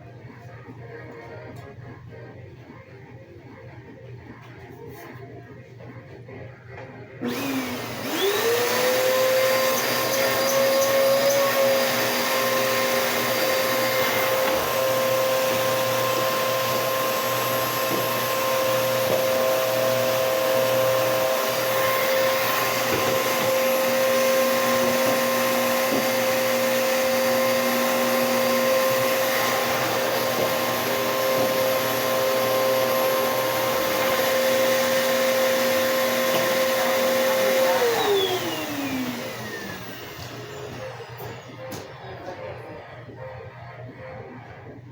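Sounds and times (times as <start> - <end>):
vacuum cleaner running: 7.2 - 44.6.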